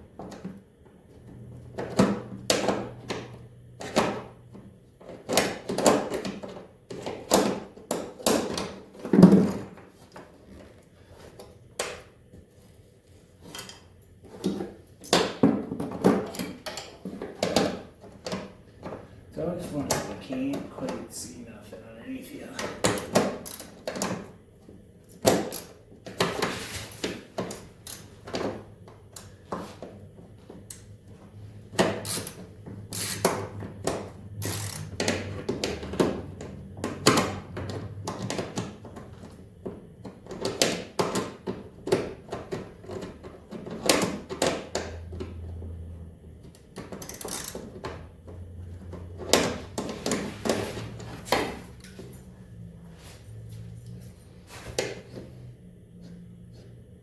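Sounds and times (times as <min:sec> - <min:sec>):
hand tools clinking on metal: 0:50.9 - 0:54.2.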